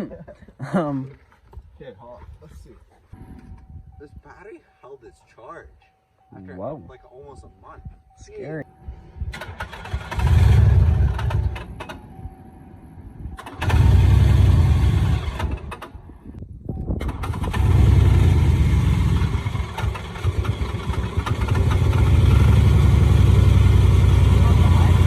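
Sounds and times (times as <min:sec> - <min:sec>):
engine cranking on starter: 0:09.3 - 0:12.1, 0:13.3 - 0:16.0, 0:17.0 - 0:22.8
engine running steadily: 0:17.1 - 0:25.0.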